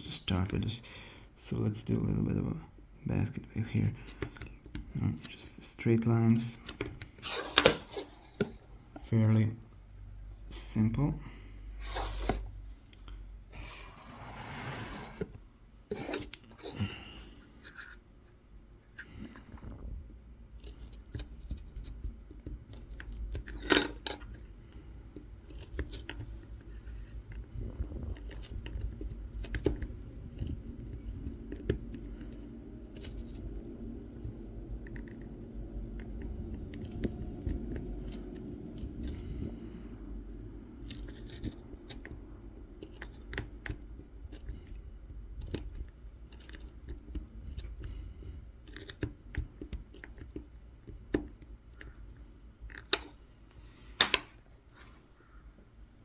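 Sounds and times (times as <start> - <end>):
knife scratching wood: 6.4 - 8.7, 13.6 - 17.0, 20.6 - 24.4, 25.4 - 27.5, 28.1 - 35.0, 36.6 - 39.4, 40.3 - 51.0.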